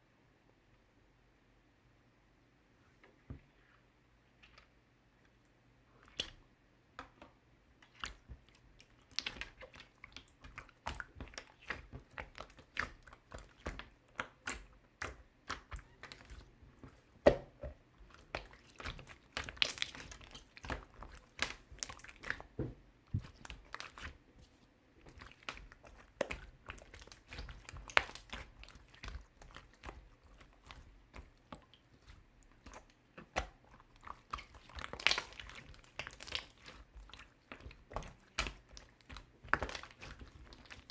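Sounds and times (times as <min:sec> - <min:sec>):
slime squeezed by hand: 0:32.0 - 0:40.9.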